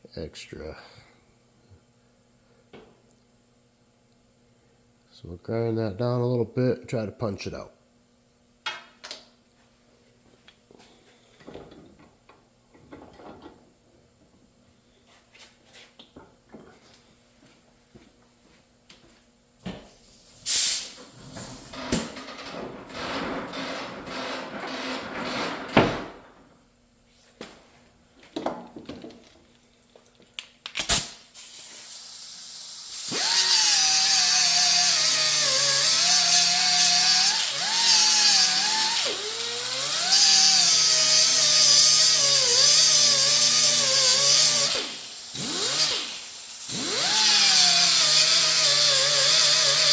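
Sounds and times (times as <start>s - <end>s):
power grinder grinding metal: 33.0s - 49.9s.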